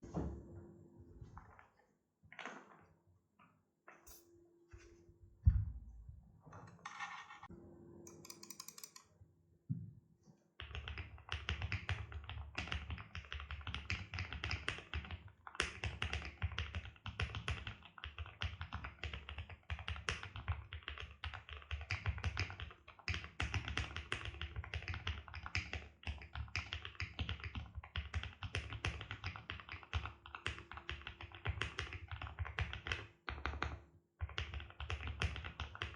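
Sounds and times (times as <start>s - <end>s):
mechanical keyboard key clacks: 8.1s - 9.0s.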